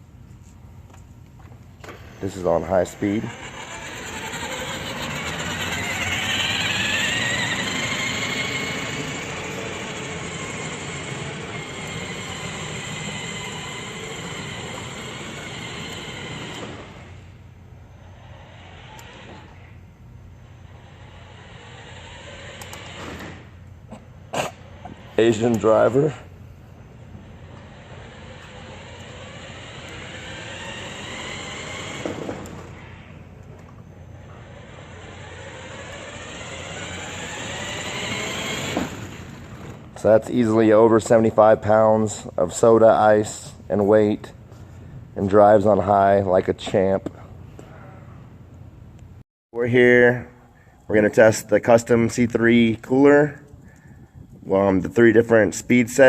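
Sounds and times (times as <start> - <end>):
wheels rumbling over ground: 1.8 - 17.4, 27.0 - 40.2
electric motor whine: 1.8 - 23.8, 24.6 - 40.0.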